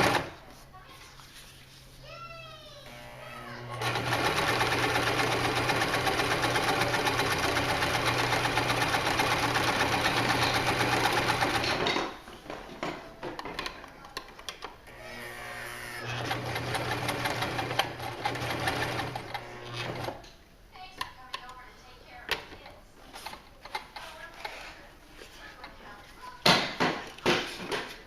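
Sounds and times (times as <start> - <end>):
sewing machine stitching: 0.0 - 0.4, 3.7 - 11.9, 16.0 - 20.2.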